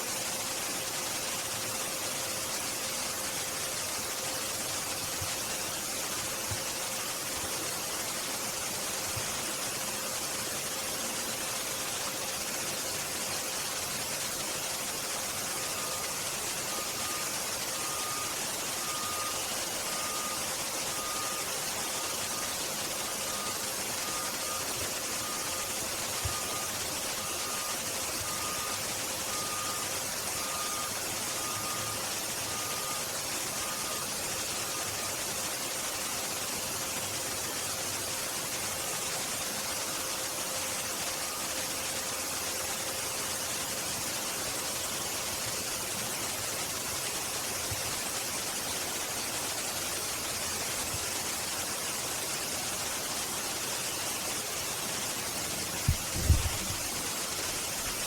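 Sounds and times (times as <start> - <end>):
outdoor background hiss: 0.0 - 58.0
faint beeps: 15.0 - 35.1.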